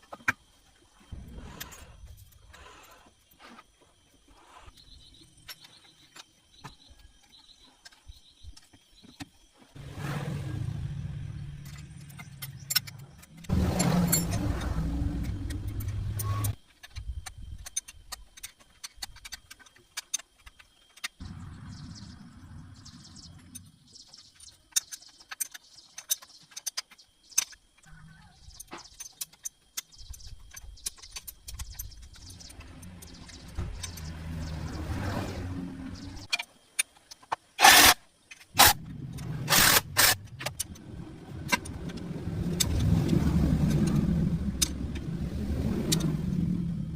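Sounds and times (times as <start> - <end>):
metallic clicks and clinks: 11.5 - 21.2
motor running: 38.6 - 46.9.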